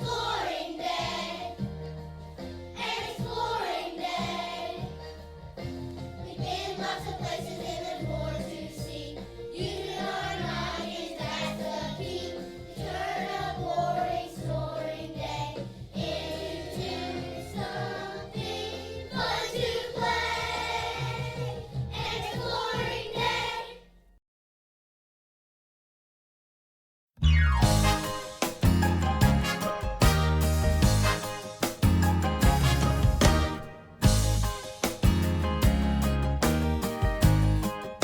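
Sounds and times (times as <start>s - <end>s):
children singing together: 0.0s - 1.6s, 2.7s - 5.0s, 6.2s - 23.8s
instrumental accompaniment: 27.2s - 38.0s.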